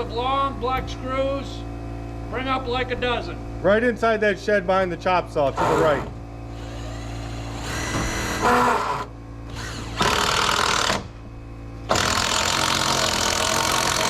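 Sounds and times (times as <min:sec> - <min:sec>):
steady low hum: 0:00.0 - 0:14.0
power drill driving screws into wood: 0:05.6 - 0:11.1, 0:11.9 - 0:14.0.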